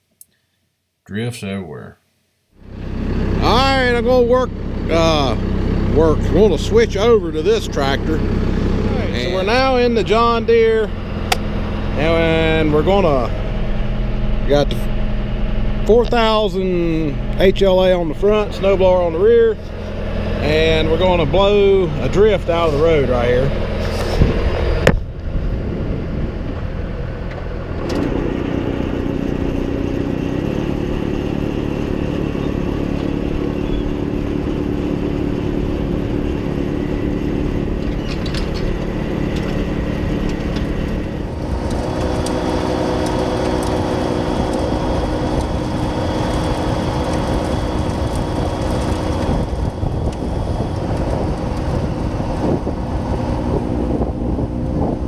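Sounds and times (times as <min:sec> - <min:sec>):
snowblower working: 0:41.1 - 0:55.0
tractor engine running under load: 0:41.1 - 0:55.0.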